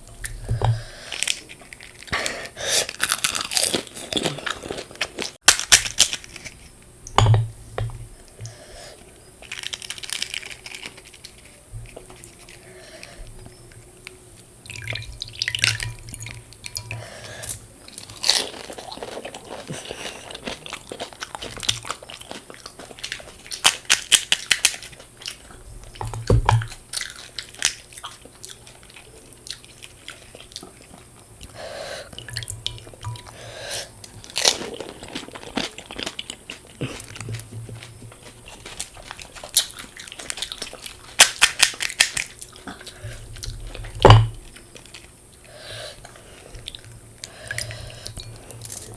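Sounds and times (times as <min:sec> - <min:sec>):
person chewing: 0:00.0 - 0:06.7, 0:14.0 - 0:48.9
crisp shells crunching: 0:00.8 - 0:06.7, 0:09.4 - 0:12.7, 0:18.0 - 0:25.4, 0:34.0 - 0:43.9.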